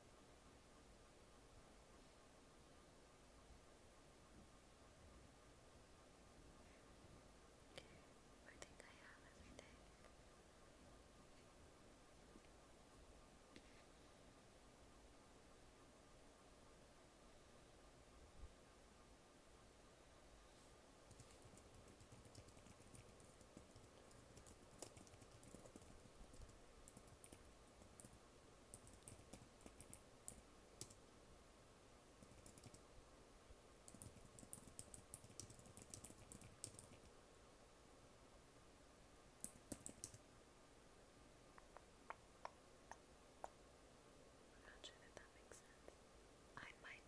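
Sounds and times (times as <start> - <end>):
typing on computer keyboard: 21.1 - 31.0, 32.2 - 32.8, 33.9 - 37.1, 39.4 - 40.2.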